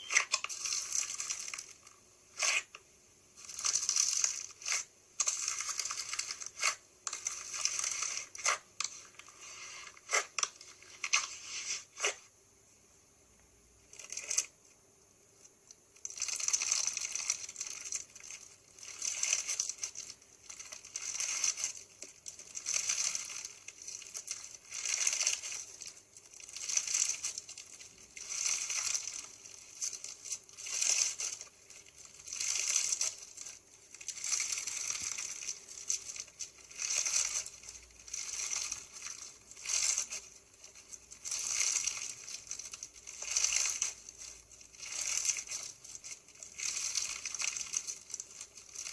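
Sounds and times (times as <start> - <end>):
crunchy slime squeezed: 0.0 - 1.7.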